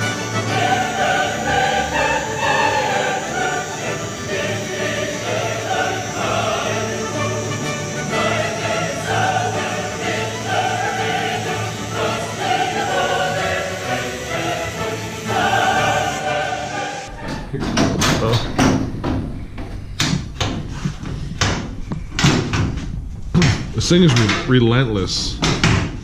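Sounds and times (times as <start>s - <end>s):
choir singing music: 0.0s - 17.5s
sheet metal knocking and clattering: 17.2s - 24.5s.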